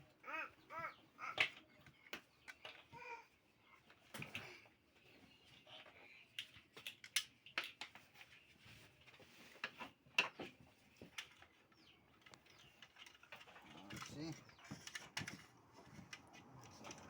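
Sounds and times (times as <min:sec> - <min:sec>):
fan parts clicking and knocking: 0:09.0 - 0:17.0.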